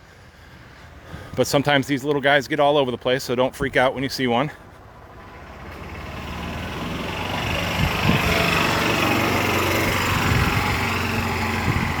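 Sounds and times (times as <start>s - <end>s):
small engine running: 5.5s - 12.0s.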